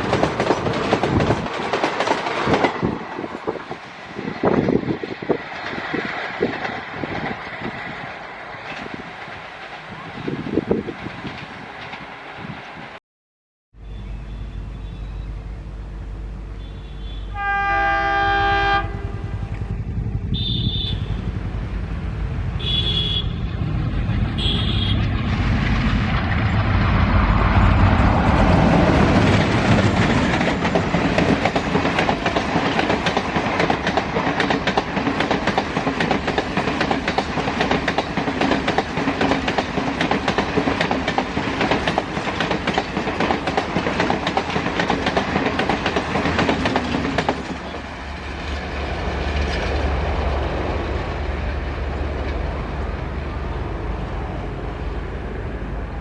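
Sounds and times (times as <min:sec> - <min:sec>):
wheels clattering over rail joints: 0:00.0 - 0:10.0, 0:23.5 - 0:52.8
train engine rumble: 0:00.0 - 0:13.0, 0:13.8 - 0:56.0
train horn: 0:16.5 - 0:21.3, 0:22.6 - 0:23.6, 0:24.3 - 0:25.1.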